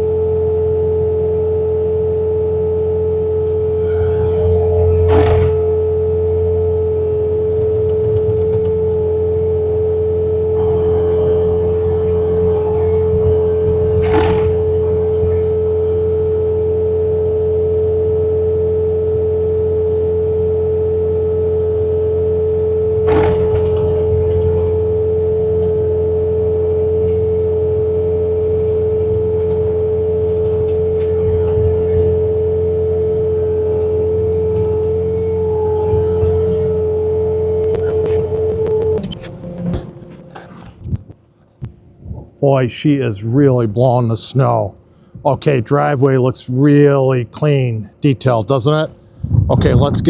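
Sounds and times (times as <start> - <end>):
engine rumble: 0.0 - 43.4
high hydraulic whine: 0.0 - 50.0.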